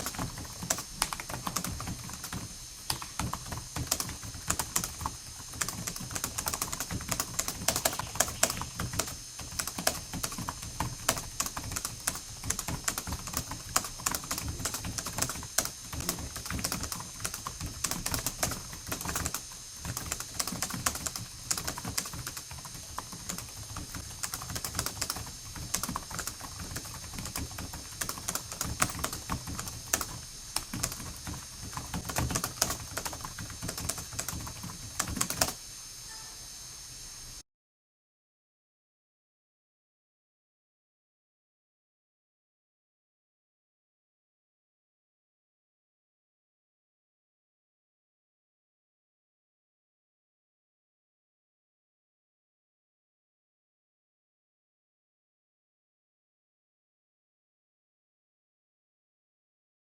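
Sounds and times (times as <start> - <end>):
fast typing on keyboard: 0.0 - 35.6.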